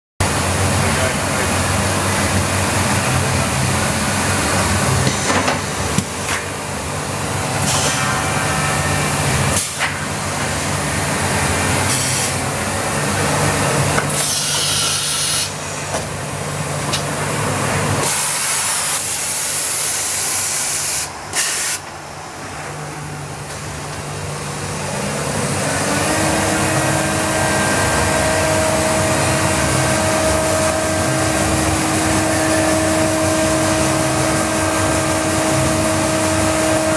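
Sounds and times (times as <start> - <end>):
machine hum: 0.2 - 36.9
steady whine: 21.1 - 36.9.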